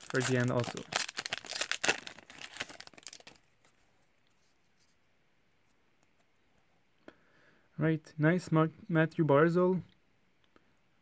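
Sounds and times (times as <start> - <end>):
foil wrapper crinkling: 0.0 - 3.4.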